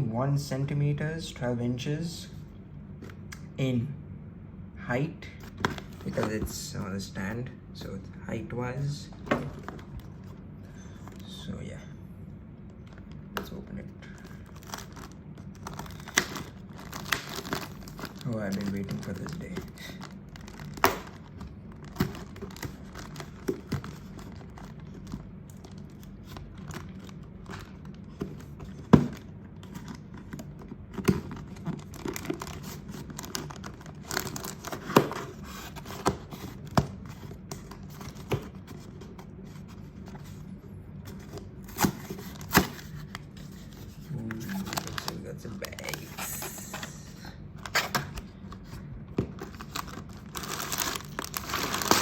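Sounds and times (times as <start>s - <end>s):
low steady hum: 0.0s - 52.0s
cardboard tearing and crinkling: 14.3s - 39.2s, 41.1s - 46.9s, 49.4s - 52.0s.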